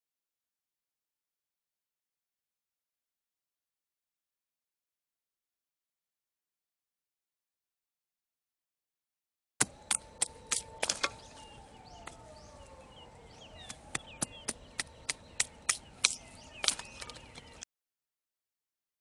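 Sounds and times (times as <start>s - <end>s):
distant wailing tone: 9.6s - 16.3s.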